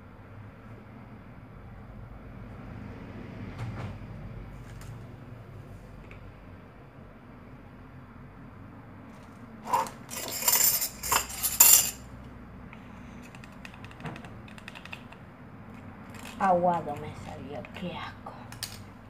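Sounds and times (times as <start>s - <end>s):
hard objects clinking and clattering: 9.6s - 12.1s, 13.2s - 17.0s.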